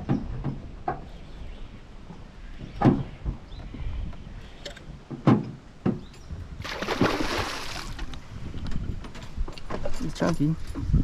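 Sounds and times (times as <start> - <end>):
knocks and thumps on boat: 0.0 - 1.2, 2.1 - 3.8, 5.0 - 8.1.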